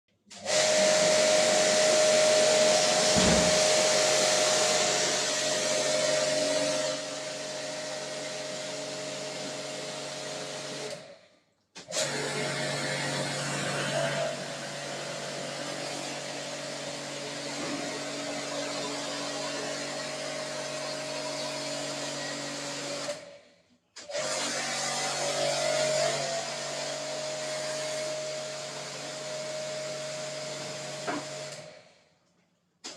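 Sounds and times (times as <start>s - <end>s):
pressure washer running: 0.4s - 10.9s.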